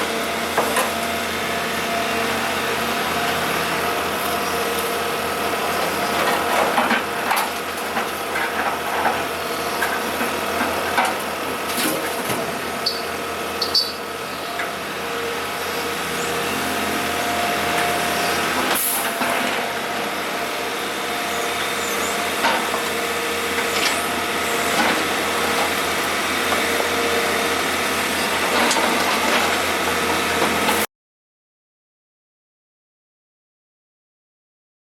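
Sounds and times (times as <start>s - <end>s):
diesel engines running: 0.0s - 30.9s.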